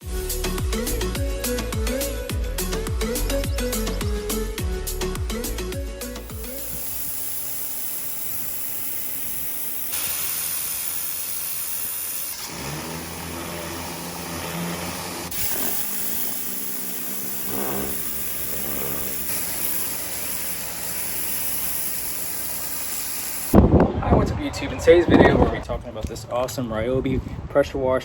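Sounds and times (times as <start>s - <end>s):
pressure washer motor humming: 5.1s - 23.6s
water jet hissing: 6.2s - 23.6s.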